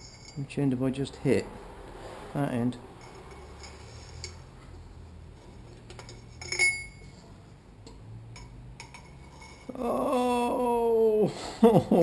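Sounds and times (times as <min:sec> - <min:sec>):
metal tools clinking: 0:00.0 - 0:00.6, 0:03.0 - 0:04.6, 0:05.5 - 0:07.3, 0:08.3 - 0:09.8
sharp ringing metallic clink: 0:00.0 - 0:00.6, 0:06.4 - 0:07.1.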